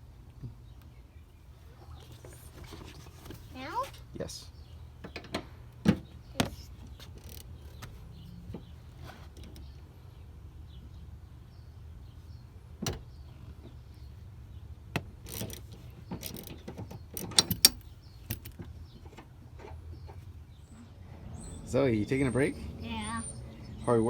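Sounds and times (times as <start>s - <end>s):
ratchet clicks and metal knocks: 15.2s - 19.2s.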